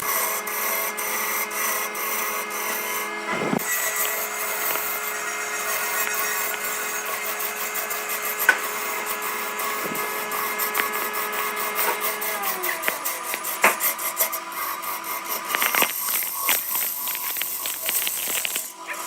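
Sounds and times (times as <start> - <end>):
wood rubbed and scraped: 3.2 - 7.5.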